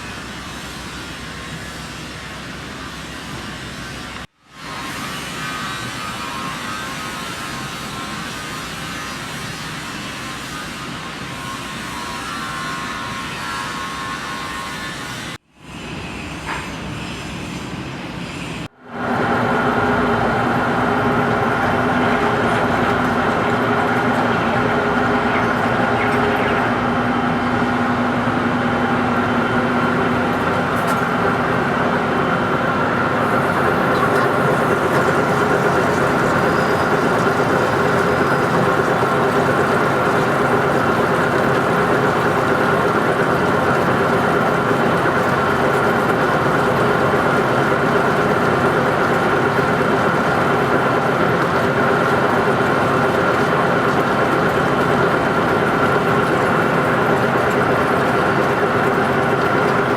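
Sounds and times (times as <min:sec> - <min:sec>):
lathe machine drone: 0:18.9 - 0:59.9.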